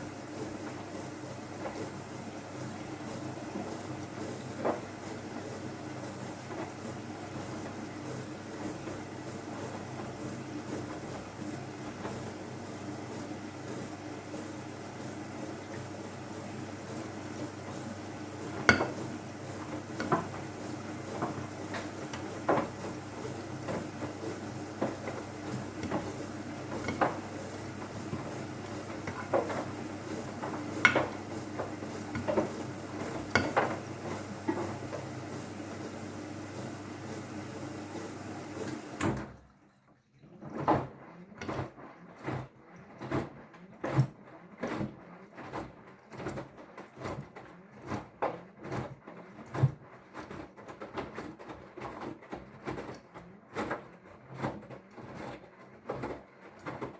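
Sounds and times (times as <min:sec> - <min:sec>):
washing machine hum: 0:00.0 - 0:56.9
washing machine knock: 0:14.3 - 0:37.6.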